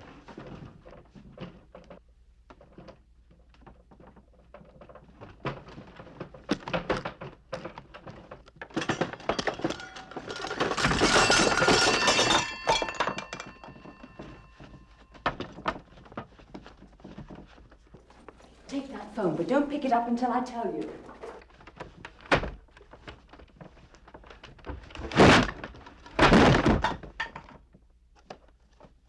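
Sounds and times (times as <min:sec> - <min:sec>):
knocks and clattering: 0:03.9 - 0:18.4
crash of breaking parts: 0:08.7 - 0:14.3
metallic ringing: 0:09.3 - 0:14.6.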